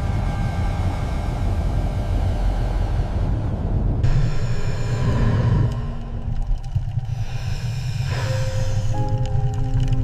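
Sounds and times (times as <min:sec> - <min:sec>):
low rumble: 0:00.0 - 0:10.0
hiss: 0:07.0 - 0:09.1.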